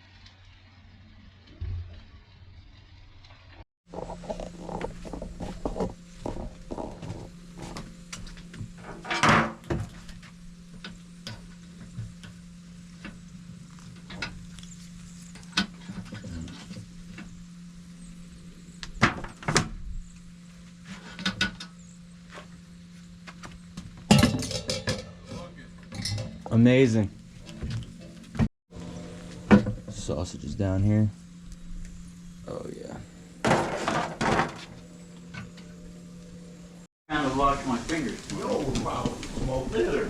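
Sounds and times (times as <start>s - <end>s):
steady low hum: 3.9s - 40.0s.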